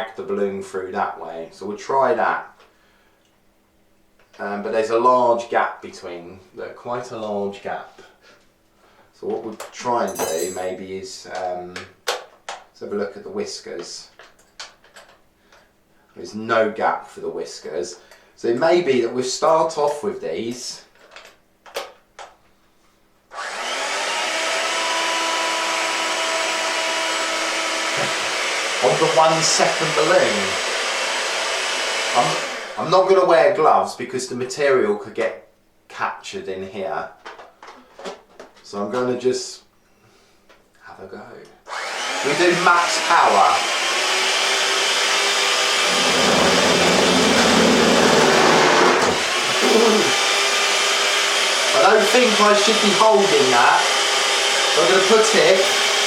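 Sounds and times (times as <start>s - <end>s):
electric food mixer whining: 23.3s - 32.9s, 41.7s - 56.0s.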